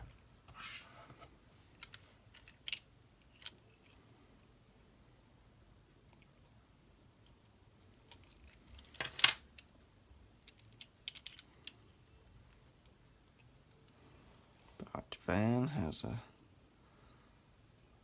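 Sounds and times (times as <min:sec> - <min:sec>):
toy car parts clicking and clattering: 0:01.7 - 0:04.0, 0:07.2 - 0:09.7, 0:10.4 - 0:13.5.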